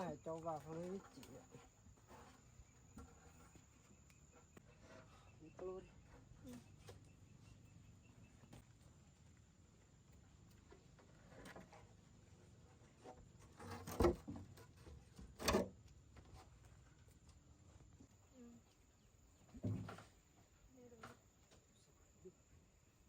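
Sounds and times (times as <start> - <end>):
faint clicks and rustling: 0.2 - 5.2.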